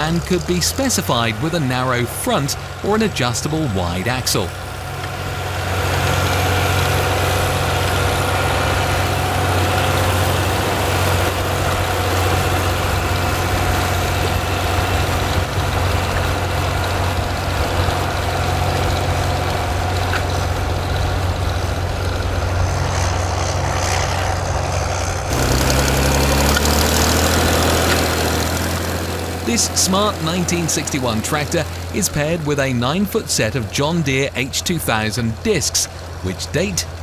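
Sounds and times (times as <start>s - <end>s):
tractor engine running: 0.0s - 37.0s.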